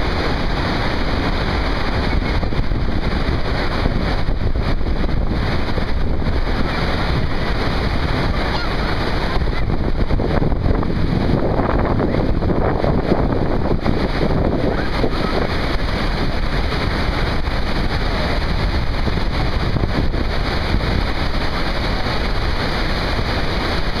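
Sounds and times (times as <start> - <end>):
waterfall roaring: 0.0 - 24.0
wind buffeting the microphone: 0.0 - 24.0.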